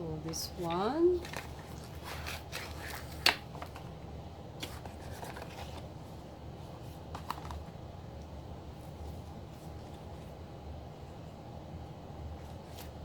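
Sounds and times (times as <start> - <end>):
packaging rustling: 1.1 - 4.0, 4.6 - 6.2, 6.8 - 7.7.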